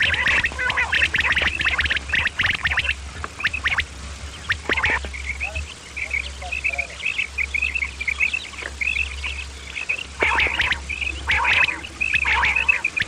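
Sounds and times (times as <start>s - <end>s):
low steady hum: 0.0s - 13.0s
quail harsh rasping calls: 0.0s - 13.0s
quail short high chirps: 0.0s - 13.0s.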